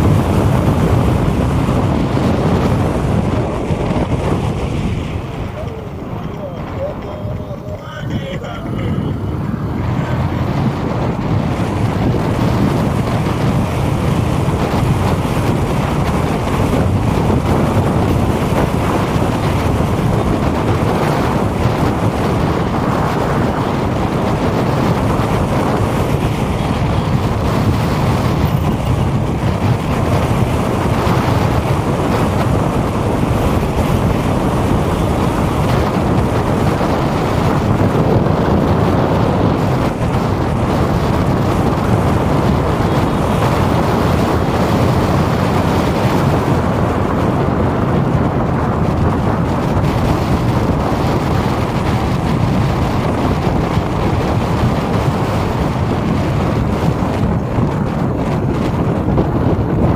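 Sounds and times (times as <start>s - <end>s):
city street noise: 0.0s - 59.9s
wind rumble on microphone: 0.0s - 59.9s.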